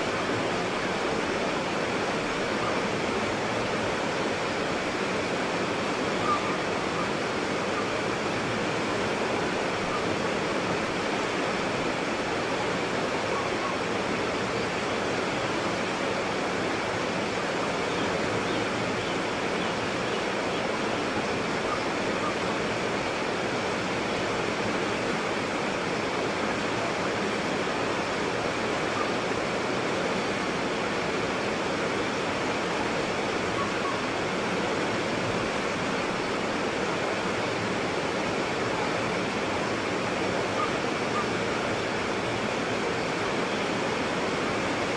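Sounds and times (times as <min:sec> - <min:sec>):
water rushing over rocks: 0:00.0 - 0:44.9.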